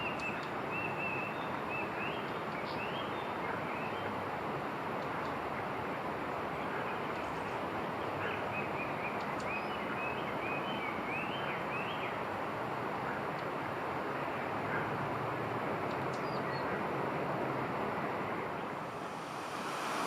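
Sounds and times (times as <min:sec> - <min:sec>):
rushing outdoor background noise: 0:00.0 - 0:20.0.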